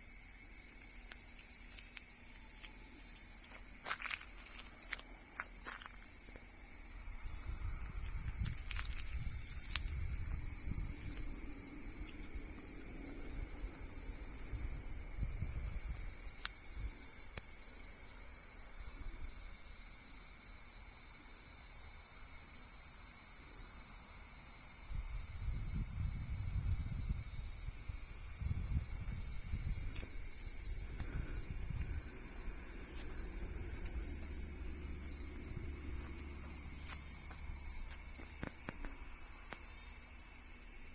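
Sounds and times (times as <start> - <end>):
insect chorus buzzing: 0.0 - 40.9
wind rumble on microphone: 6.5 - 18.0, 24.8 - 39.1.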